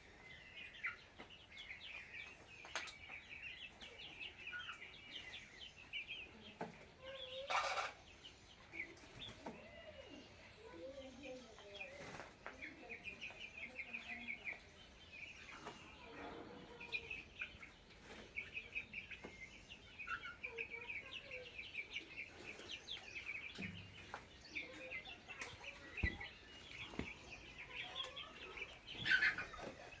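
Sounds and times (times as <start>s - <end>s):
chickens peeping: 0.0s - 30.0s.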